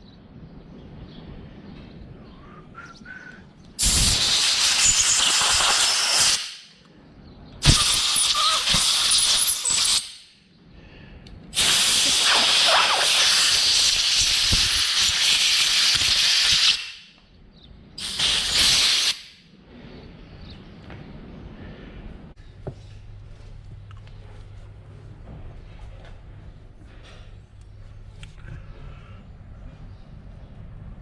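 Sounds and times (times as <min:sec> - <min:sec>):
pressurised air hissing from nozzle: 0:03.8 - 0:06.7, 0:07.6 - 0:10.2, 0:11.5 - 0:17.1, 0:18.0 - 0:19.4.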